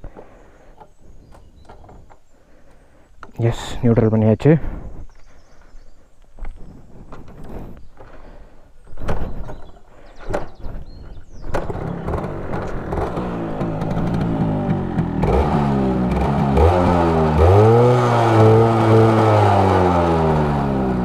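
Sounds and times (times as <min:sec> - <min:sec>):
two-stroke engine running: 0:11.4 - 0:21.0.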